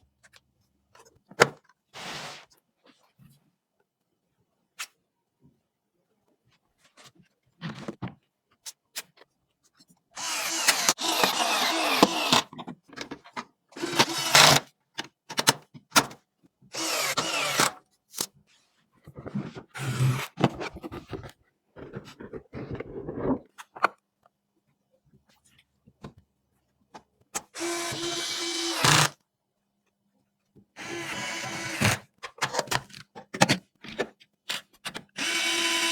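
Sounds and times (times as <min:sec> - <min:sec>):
rustling and scraping of computer parts: 0:18.1 - 0:24.0.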